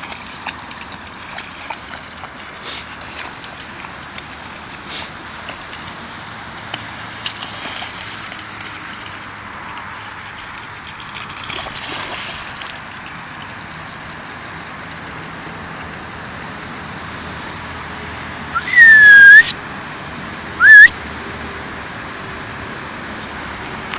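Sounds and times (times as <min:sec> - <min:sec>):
loud whistles: 0:18.6 - 0:19.6, 0:20.6 - 0:20.9.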